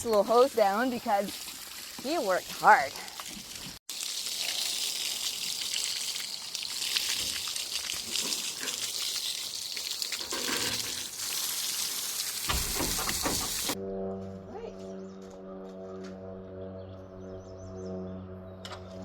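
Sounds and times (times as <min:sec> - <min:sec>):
garden hose spraying water: 0:00.0 - 0:13.8.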